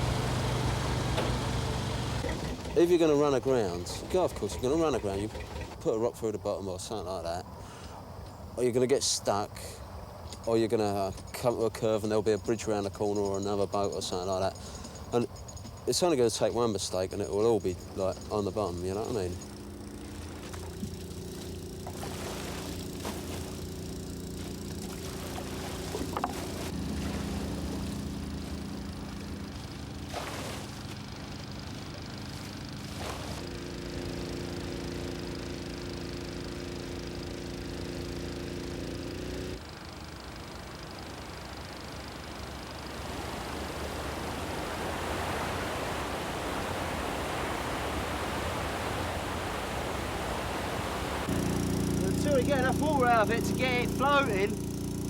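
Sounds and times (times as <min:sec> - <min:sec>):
engine running steadily: 0:00.0 - 0:55.0
water rushing: 0:24.6 - 0:30.8, 0:42.9 - 0:54.6.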